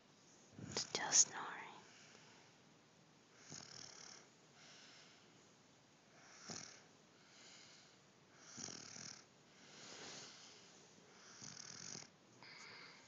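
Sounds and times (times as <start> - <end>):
baby snoring faintly: 3.4 - 5.2, 6.2 - 13.0.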